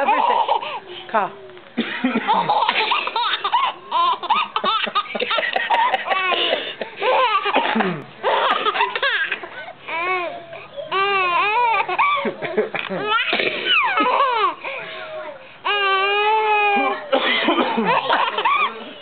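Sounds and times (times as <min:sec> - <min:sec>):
baby laughing: 0:00.0 - 0:00.8, 0:02.1 - 0:14.8, 0:16.7 - 0:18.8
adult coughing: 0:05.9 - 0:06.9, 0:07.5 - 0:09.4, 0:12.2 - 0:13.9, 0:17.1 - 0:18.1.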